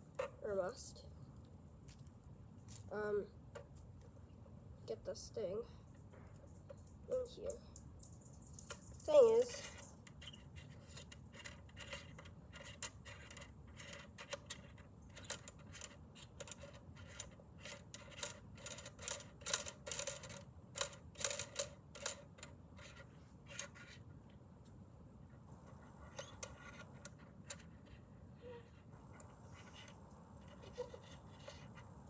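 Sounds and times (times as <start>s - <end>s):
small clicks and scrapes of parts: 7.7s - 32.0s.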